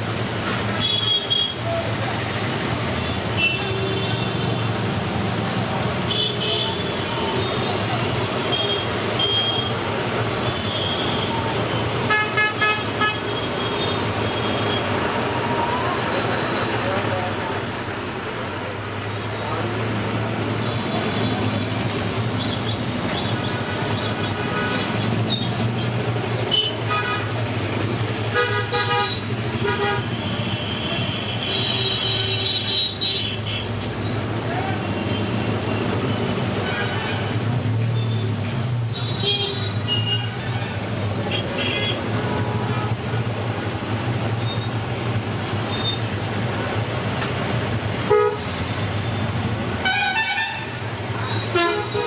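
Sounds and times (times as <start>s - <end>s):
road traffic: 0.0s - 52.0s
vehicle horns honking: 0.8s - 1.6s, 6.1s - 15.0s, 23.7s - 27.6s, 28.2s - 33.7s, 36.2s - 37.4s, 39.0s - 43.0s, 48.0s - 49.2s, 49.8s - 52.0s
vehicle horn honking: 48.1s - 48.5s, 49.8s - 52.0s.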